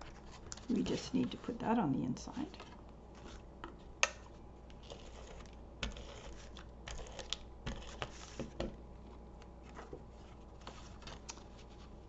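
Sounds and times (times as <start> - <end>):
paper rustling: 4.8 - 12.0.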